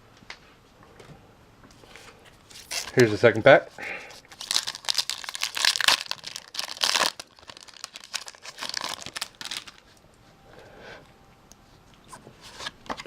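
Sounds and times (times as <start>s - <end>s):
foil wrapper crinkling and tearing: 2.5s - 3.2s, 4.2s - 10.0s.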